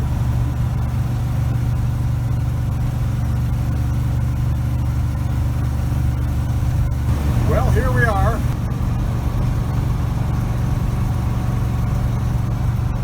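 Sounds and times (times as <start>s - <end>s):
truck engine cruising: 0.0s - 13.0s
road noise: 6.0s - 13.0s.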